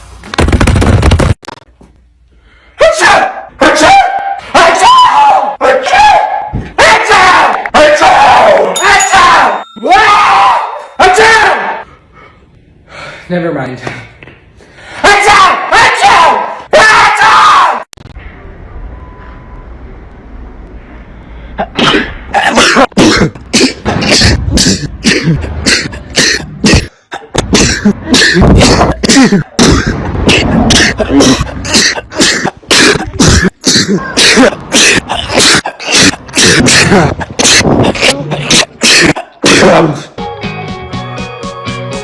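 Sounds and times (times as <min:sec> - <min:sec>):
cough-like blasts: 0:21.6 - 0:40.0
loud explosive sneezes: 0:21.6 - 0:40.0.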